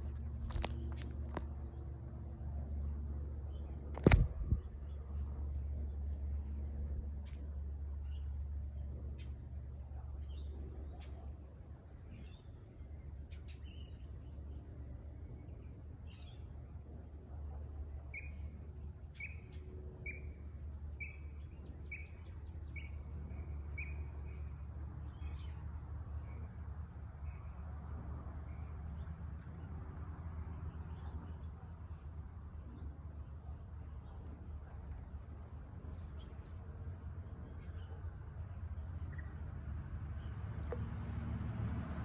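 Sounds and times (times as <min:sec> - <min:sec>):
birds chirping: 0:00.0 - 0:01.5, 0:31.4 - 0:41.0
steady low rumble: 0:00.0 - 0:11.5.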